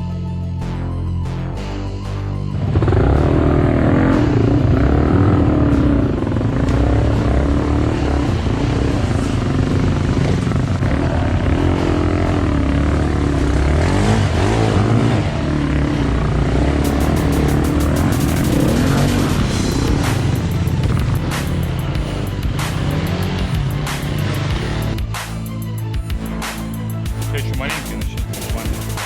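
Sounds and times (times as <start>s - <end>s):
motorcycle engine revving: 2.5s - 29.0s.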